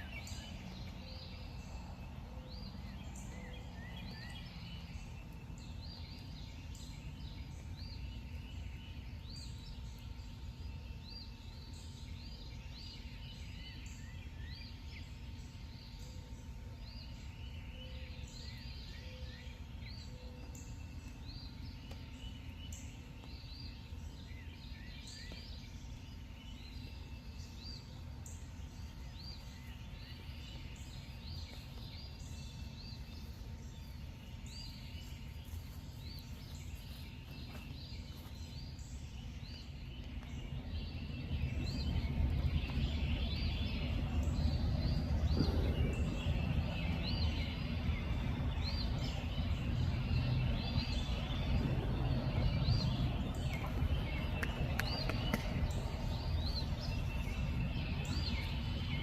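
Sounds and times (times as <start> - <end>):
steady low rumble: 18.1 - 59.0.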